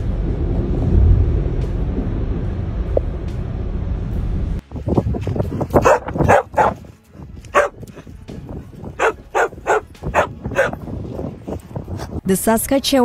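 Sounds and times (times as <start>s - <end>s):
low steady rumble: 0.0s - 13.0s
dog barking: 5.7s - 6.9s, 7.5s - 8.1s, 8.9s - 10.8s.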